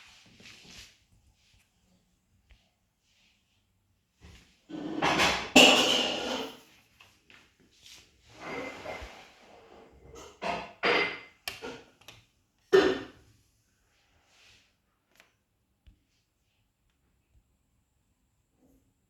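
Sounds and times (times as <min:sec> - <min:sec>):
soft rustle: 0:00.0 - 0:04.6.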